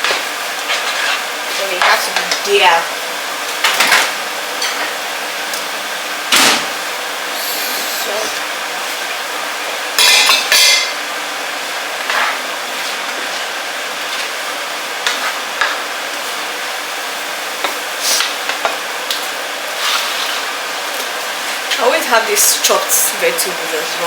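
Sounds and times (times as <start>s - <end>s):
steady hiss: 6.6s - 8.9s.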